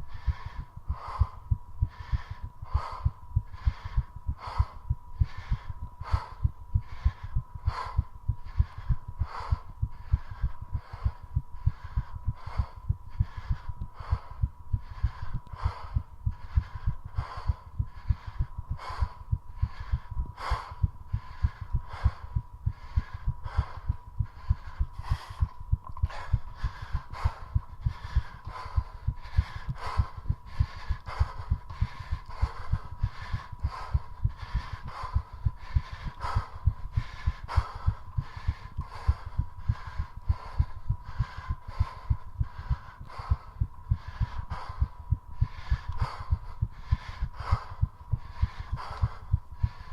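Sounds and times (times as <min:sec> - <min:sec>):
fast heartbeat thumps: 0:00.0 - 0:49.9
heavy breathing: 0:00.0 - 0:49.9.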